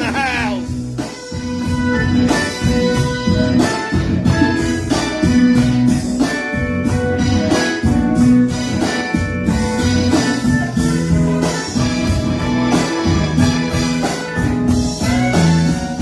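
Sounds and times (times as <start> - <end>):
amplified band instruments: 0.0 - 16.0
steady drum beat: 0.0 - 16.0.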